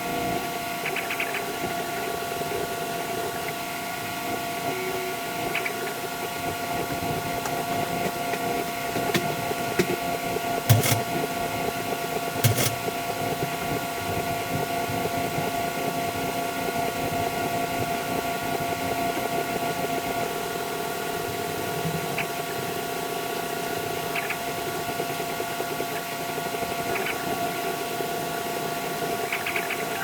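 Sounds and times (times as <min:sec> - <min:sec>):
small motor humming: 0:06.4 - 0:13.4.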